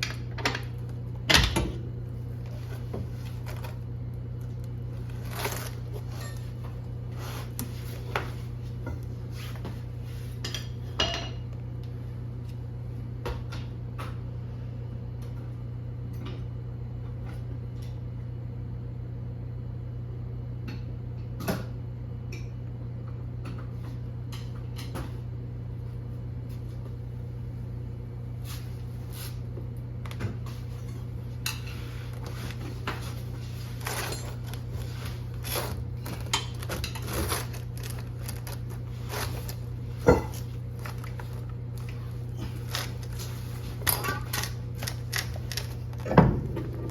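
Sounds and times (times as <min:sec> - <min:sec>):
low hum: 0:30.0 - 0:46.9.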